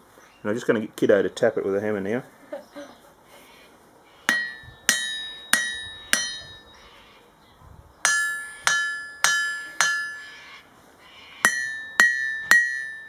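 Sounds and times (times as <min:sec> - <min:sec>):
hammer ringing on anvil: 0:04.3 - 0:06.8, 0:08.0 - 0:10.4, 0:11.4 - 0:13.0.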